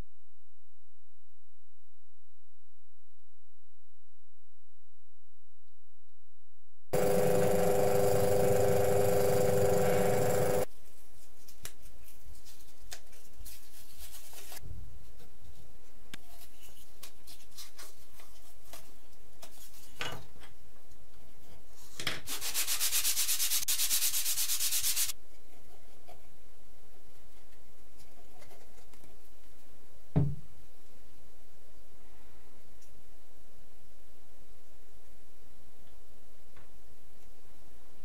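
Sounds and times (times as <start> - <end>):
steady hum with hiss: 7.0 - 11.2
sandpaper rubbing on wood: 22.3 - 25.2.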